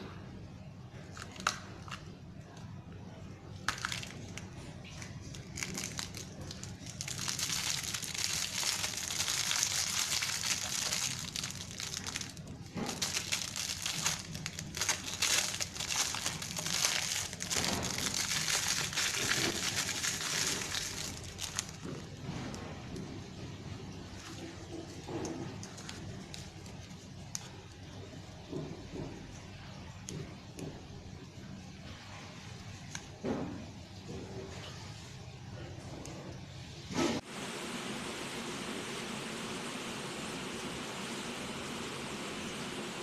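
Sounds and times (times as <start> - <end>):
plastic wrapping crinkling: 3.6 - 22.3, 24.2 - 27.6.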